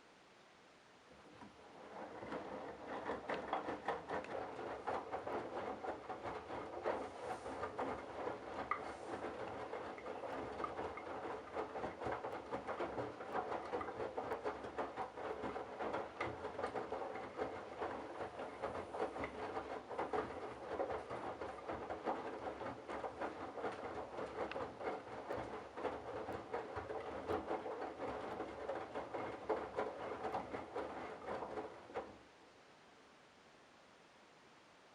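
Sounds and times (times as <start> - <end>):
washing machine water sloshing: 1.8 - 32.1.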